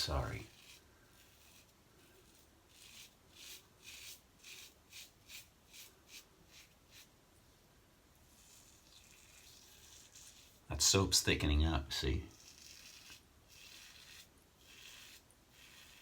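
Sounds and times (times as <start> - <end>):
razor strokes on lathered skin: 0.0 - 7.1, 8.2 - 10.7, 12.0 - 16.0.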